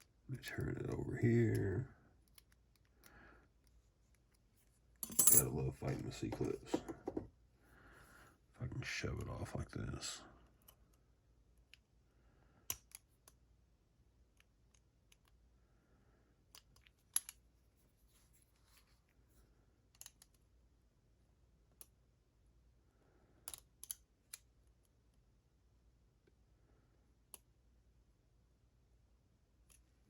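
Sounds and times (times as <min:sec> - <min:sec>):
metallic clicks of small tools: 0:12.7 - 0:13.4, 0:16.5 - 0:17.4, 0:19.9 - 0:20.4, 0:23.4 - 0:24.5.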